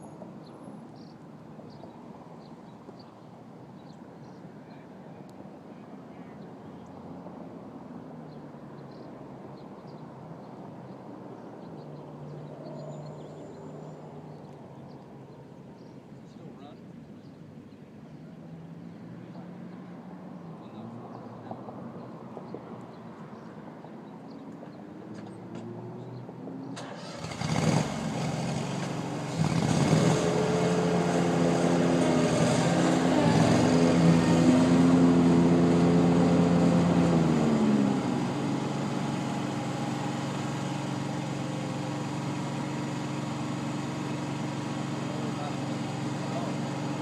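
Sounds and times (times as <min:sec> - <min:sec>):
riding lawn mower engine: 0:26.8 - 0:47.0.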